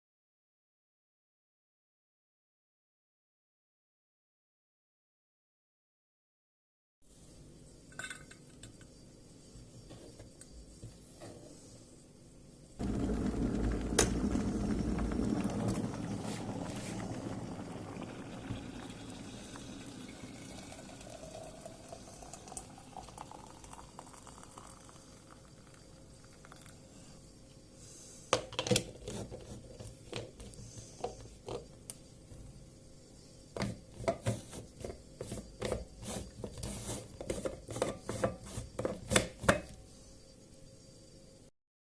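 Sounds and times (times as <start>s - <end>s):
dishes and utensils clinking: 7.9s - 8.8s
liquid pouring into vessel: 12.8s - 26.9s.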